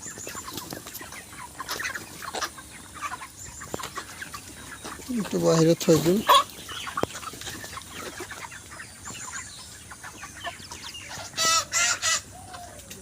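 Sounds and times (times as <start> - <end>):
chickens clucking and peeping: 0.0 - 13.0
loud chicken squawk: 9.3 - 13.0.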